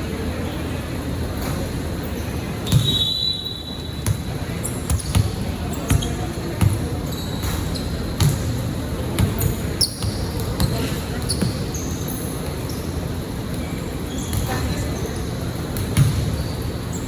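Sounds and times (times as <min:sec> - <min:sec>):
basketball bouncing on hard court: 0:02.7 - 0:03.0, 0:04.0 - 0:11.8, 0:15.7 - 0:16.6.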